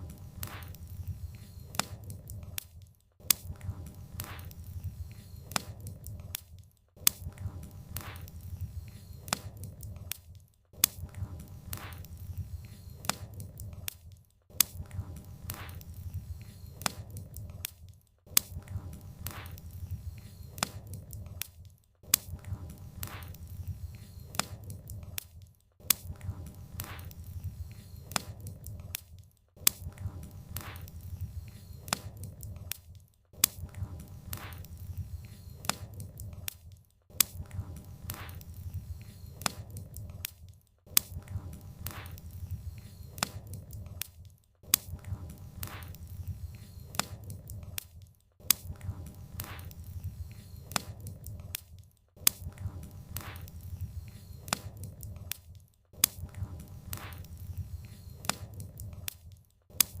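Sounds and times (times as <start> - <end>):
wood fire crackling and popping: 0.0 - 60.0.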